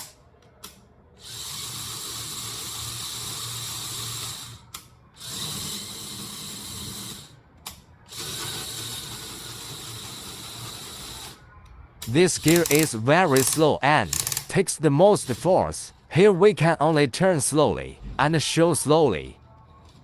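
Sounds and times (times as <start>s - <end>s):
whir of meshing plastic gears: 1.2s - 4.6s, 5.2s - 7.3s, 8.1s - 11.4s, 12.0s - 14.6s.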